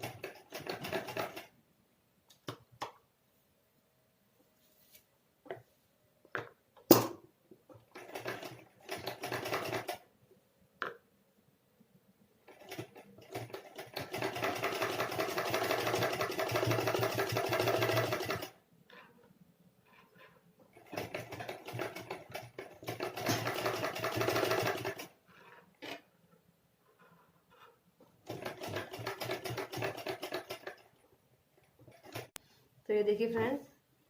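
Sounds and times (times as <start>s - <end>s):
sewing machine stitching: 0.0s - 1.5s, 7.8s - 10.0s, 12.4s - 19.2s, 19.9s - 26.1s, 26.9s - 31.0s, 31.7s - 32.3s.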